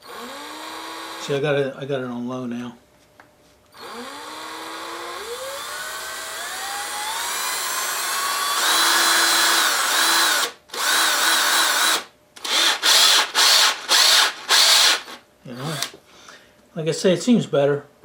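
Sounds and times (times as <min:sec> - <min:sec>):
cordless drill motor whining: 0:00.0 - 0:01.3, 0:03.7 - 0:16.0.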